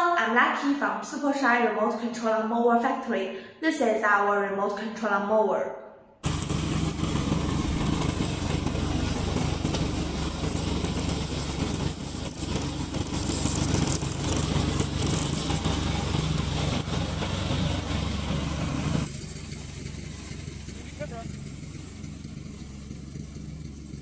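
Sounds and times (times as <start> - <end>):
lawn mower engine running: 6.2 - 24.0.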